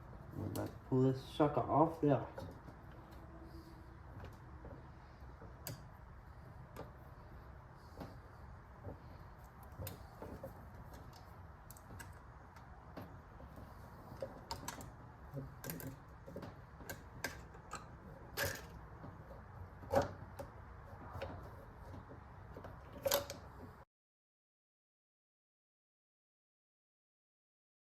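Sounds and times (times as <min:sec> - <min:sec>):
hand tools clicking on metal parts: 0:13.4 - 0:22.1.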